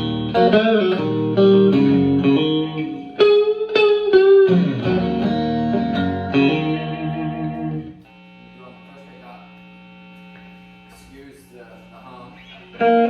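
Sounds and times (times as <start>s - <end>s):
electric guitar playing: 0.0s - 8.2s, 11.9s - 13.0s.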